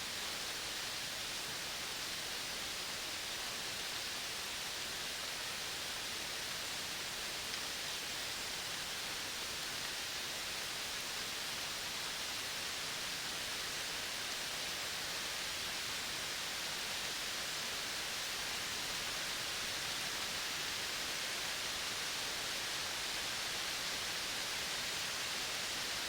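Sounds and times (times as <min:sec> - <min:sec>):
outdoor nature ambience hiss: 0:00.0 - 0:26.0.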